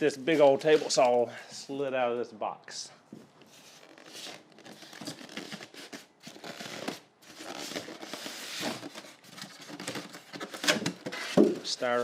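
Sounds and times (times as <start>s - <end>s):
cardboard and styrofoam rustling: 3.5s - 12.0s.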